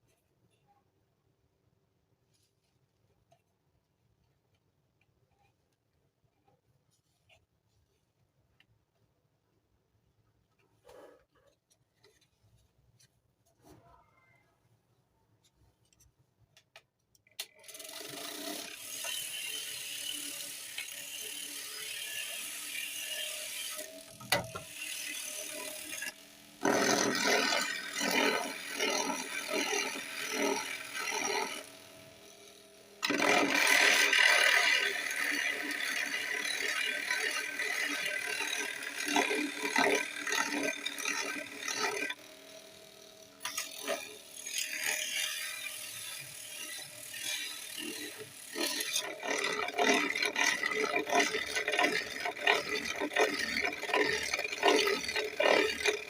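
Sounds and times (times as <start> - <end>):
orbital sander humming and rattling: 23.6 - 44.1.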